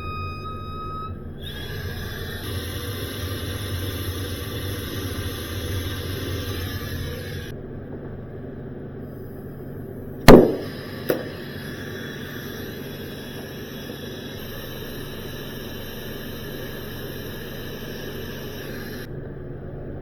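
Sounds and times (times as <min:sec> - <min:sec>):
mechanical hum with hiss: 0:00.0 - 0:20.0
loud clank: 0:10.3 - 0:11.6.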